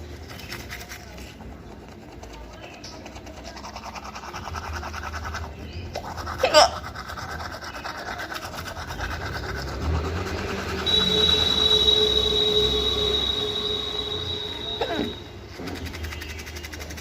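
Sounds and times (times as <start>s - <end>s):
rapid brushing strokes: 0.0s - 17.0s
high-pitched squeal: 9.7s - 15.8s
sharp rising squeak: 10.4s - 15.5s.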